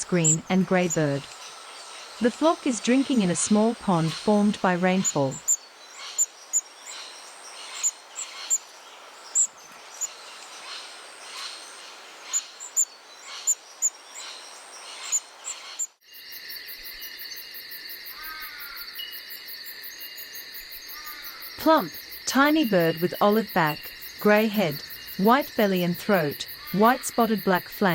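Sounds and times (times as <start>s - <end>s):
finches peeping: 0.0s - 15.9s
fast-pulsing insect chorus: 0.2s - 27.9s.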